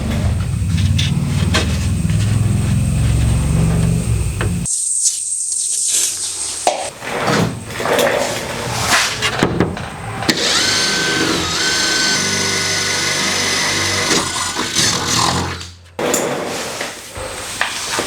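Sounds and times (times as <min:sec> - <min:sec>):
power tool cutting: 0:10.3 - 0:15.8.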